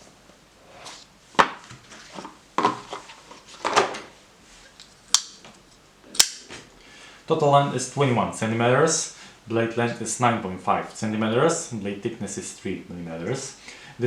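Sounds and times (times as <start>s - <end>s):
rustling and scraping: 0.6s - 5.8s.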